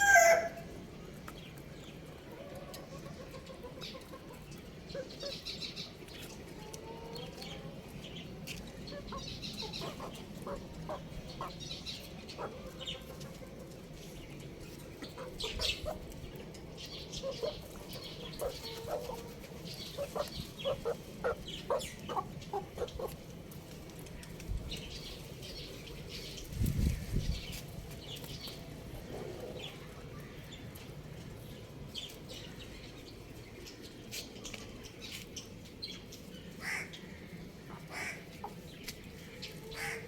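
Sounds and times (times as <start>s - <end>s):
chickens clucking: 0.0s - 32.3s, 35.6s - 40.0s
chicks peeping: 1.1s - 31.0s.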